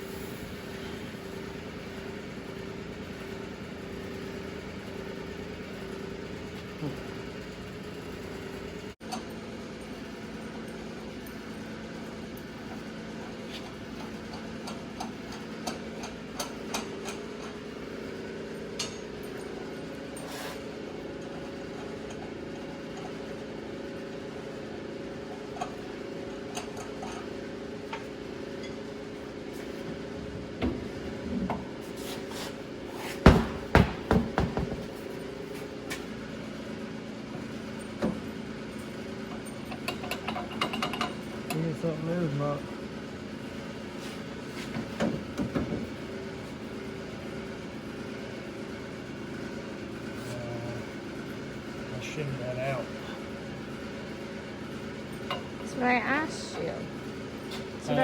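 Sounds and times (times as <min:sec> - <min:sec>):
loud tool knocks: 0:33.2 - 0:35.0.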